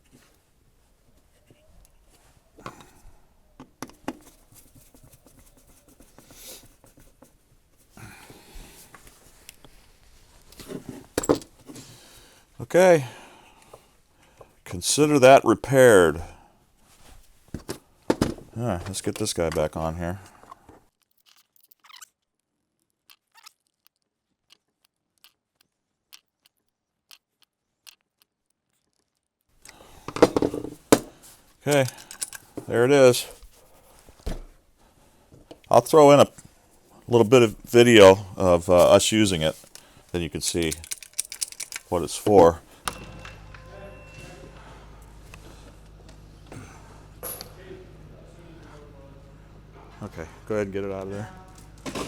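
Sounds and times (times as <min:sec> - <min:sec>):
rustling: 0:38.6 - 0:43.5.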